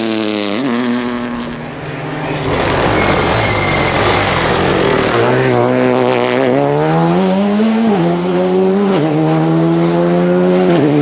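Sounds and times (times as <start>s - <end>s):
rally car engine accelerating: 0.0s - 11.0s.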